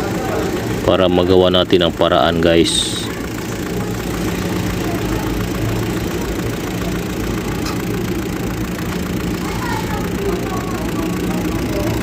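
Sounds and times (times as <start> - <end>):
diesel truck engine idling: 0.0 - 12.0.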